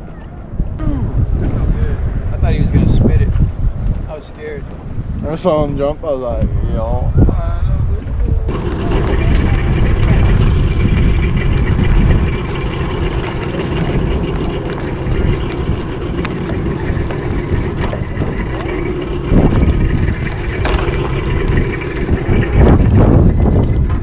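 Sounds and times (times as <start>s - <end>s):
wind and water rushing: 0.6s - 24.0s
outboard motor droning: 8.1s - 24.0s.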